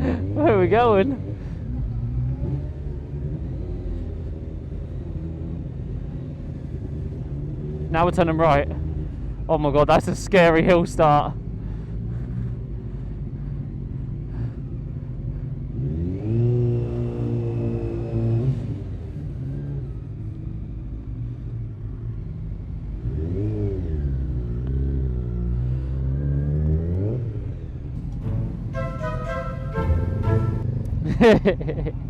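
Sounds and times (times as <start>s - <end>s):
low rumble of wind and road: 0.0s - 32.0s
motorcycle engine revving: 15.7s - 19.8s.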